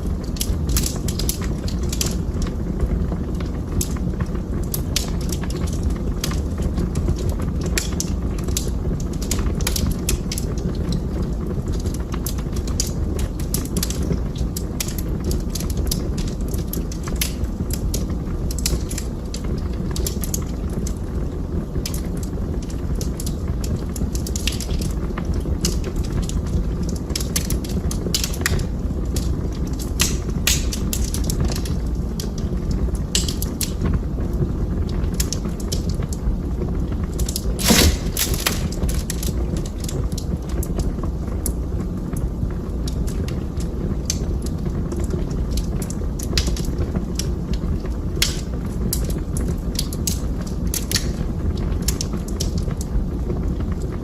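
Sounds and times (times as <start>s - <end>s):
fire crackles and snaps: 0.0s - 54.0s
fire flames rumbling: 0.0s - 54.0s
loud fire pop: 37.5s - 39.3s.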